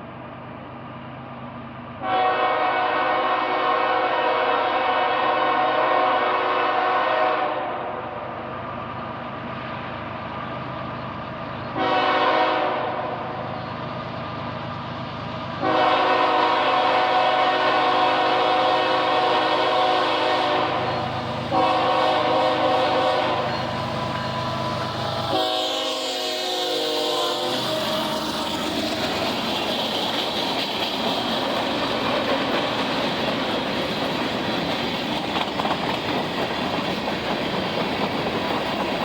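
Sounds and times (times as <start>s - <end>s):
train running noise: 0.0s - 39.0s
locomotive air horn blasts: 2.0s - 8.0s, 11.8s - 13.3s, 15.6s - 28.6s.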